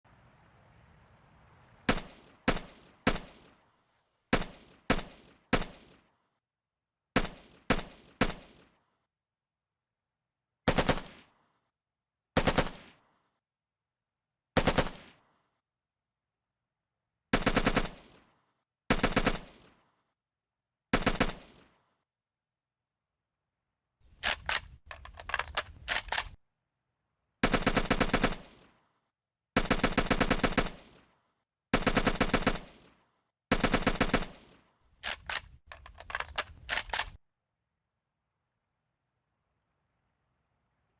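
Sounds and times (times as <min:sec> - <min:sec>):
rifle firing: 0:01.9 - 0:03.6, 0:07.2 - 0:08.8, 0:10.7 - 0:11.3, 0:12.4 - 0:13.0, 0:14.6 - 0:15.2, 0:17.3 - 0:18.2, 0:18.9 - 0:19.8, 0:21.0 - 0:21.7, 0:27.4 - 0:28.7, 0:29.6 - 0:31.0, 0:31.7 - 0:37.2.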